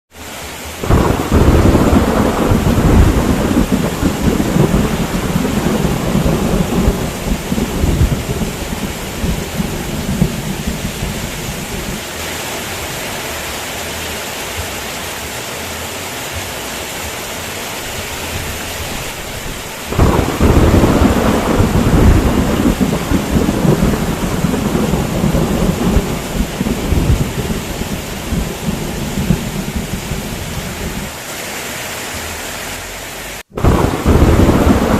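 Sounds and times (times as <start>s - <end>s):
heavy rain: 0.1s - 34.9s
thunder rumbling: 0.8s - 12.0s, 17.9s - 31.1s, 33.5s - 34.9s.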